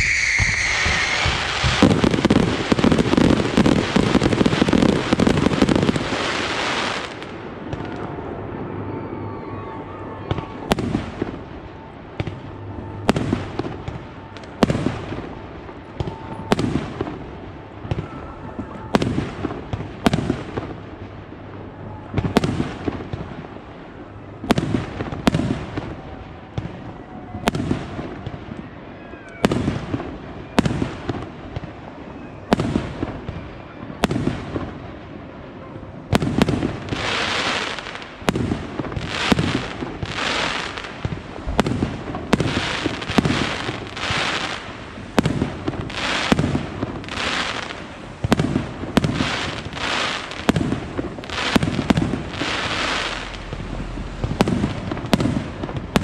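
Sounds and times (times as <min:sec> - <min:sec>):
echoing rumble: 0:00.0 - 0:06.0, 0:41.0 - 0:44.0, 0:50.5 - 0:56.0
fireworks hissing crackle: 0:00.0 - 0:08.0, 0:36.3 - 0:56.0
fireworks bangs: 0:00.0 - 0:08.8, 0:09.7 - 0:28.6, 0:36.1 - 0:56.0.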